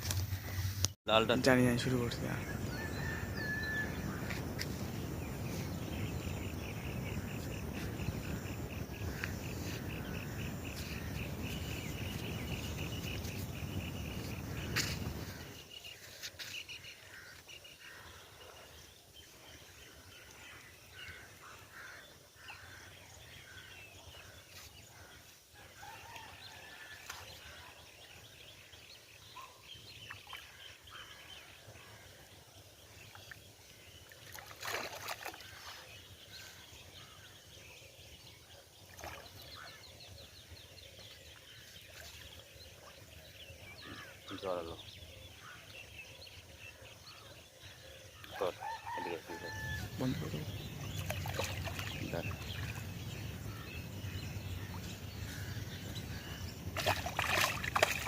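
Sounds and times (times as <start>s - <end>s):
bird chirps: 1.8s - 16.8s, 41.9s - 58.0s.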